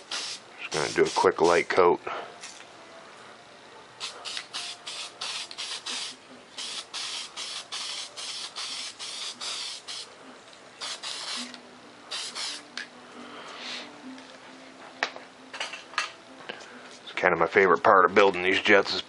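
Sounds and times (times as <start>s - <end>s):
spray paint can hissing: 0.0s - 1.6s, 4.0s - 10.1s, 10.8s - 12.6s.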